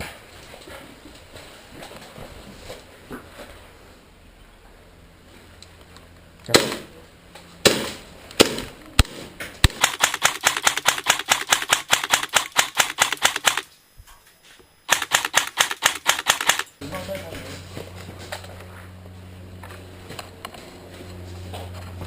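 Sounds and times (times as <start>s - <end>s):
airsoft gun single shots: 7.6s - 13.7s, 14.9s - 16.7s
airsoft gun automatic burst: 9.6s - 13.8s, 14.9s - 16.8s.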